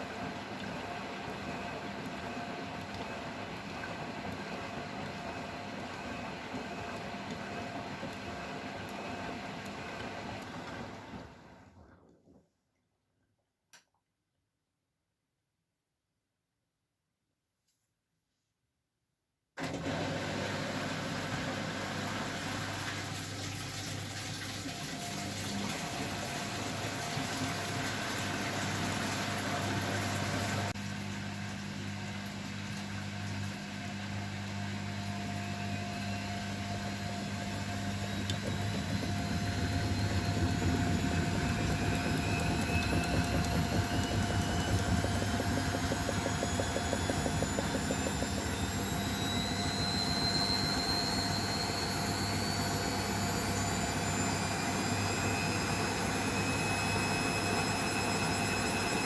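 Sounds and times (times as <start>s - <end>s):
washing machine humming: 0.0s - 12.1s, 19.6s - 59.0s
motor whine of drum spinning: 34.6s - 59.0s.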